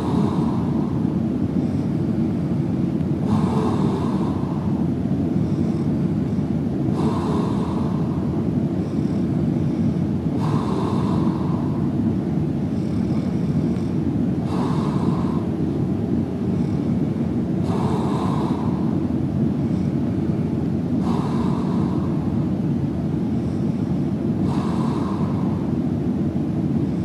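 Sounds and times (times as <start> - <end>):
man snoring softly: 0.0 - 12.0, 12.6 - 15.5, 16.4 - 22.5
steady low rumble: 0.0 - 27.0.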